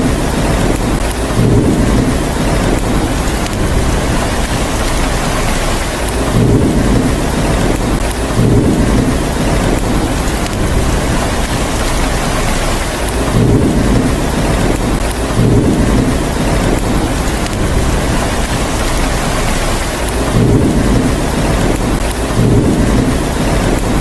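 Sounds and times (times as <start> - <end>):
heavy rain falling: 0.0 - 24.0
thunder rumbling: 0.0 - 24.0.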